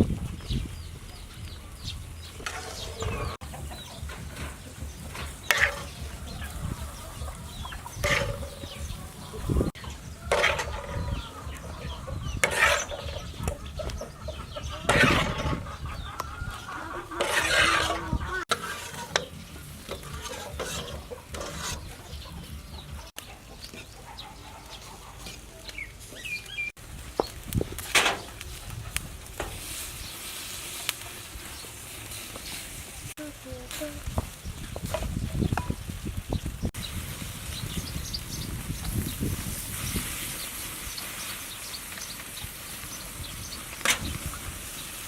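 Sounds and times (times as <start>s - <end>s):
chickens clucking: 0.0s - 36.9s
loud chicken calls: 2.5s - 4.2s, 5.5s - 26.8s.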